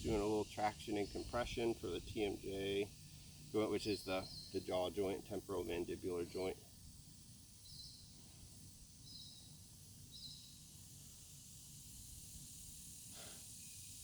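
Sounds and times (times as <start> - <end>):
faint steady hiss: 0.0 - 14.0
faint high chirps: 9.0 - 10.8.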